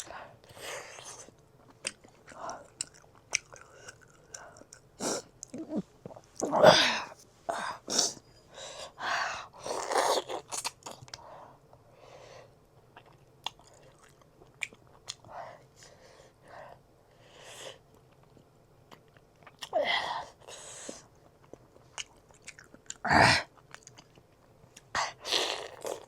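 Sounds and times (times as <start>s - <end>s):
person chewing and biting food: 0.9s - 6.5s, 21.2s - 26.0s.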